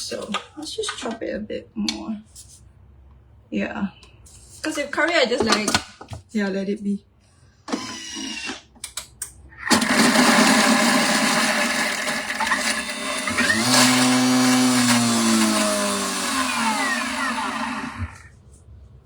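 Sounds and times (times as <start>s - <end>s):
food processor motor running: 9.7s - 18.3s.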